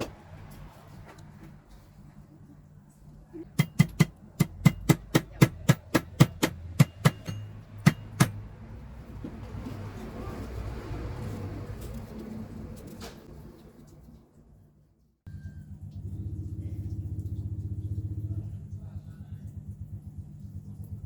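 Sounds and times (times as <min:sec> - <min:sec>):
sharp ringing knocks: 0:03.6 - 0:08.4
low hum: 0:15.3 - 0:21.0.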